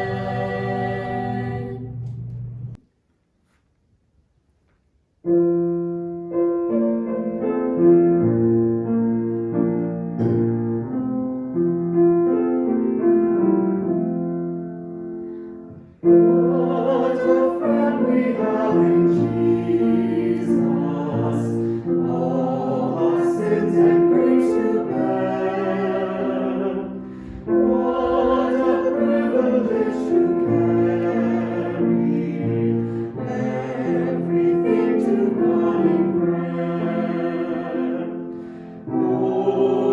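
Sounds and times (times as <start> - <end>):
voices singing a hymn: 0.0 - 2.0, 16.0 - 39.9
piano chords: 0.0 - 2.8, 5.2 - 39.9.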